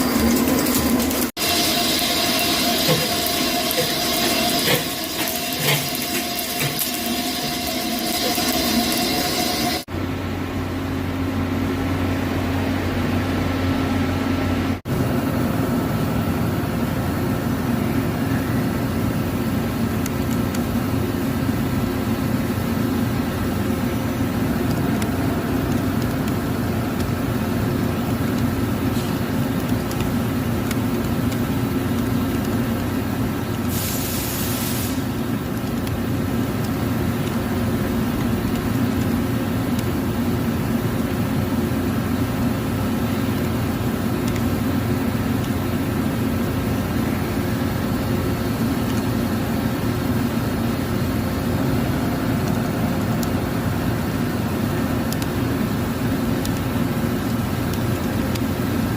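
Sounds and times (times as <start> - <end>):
lathe machine hum: 0.0 - 17.7
burst of hiss: 33.7 - 35.2.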